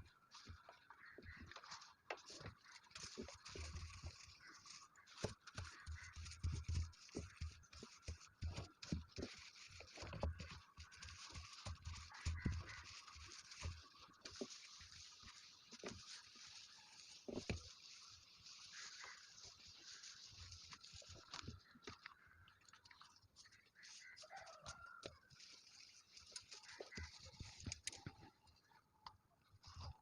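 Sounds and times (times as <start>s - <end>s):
cloth wiping and scrubbing: 0.3s - 21.4s.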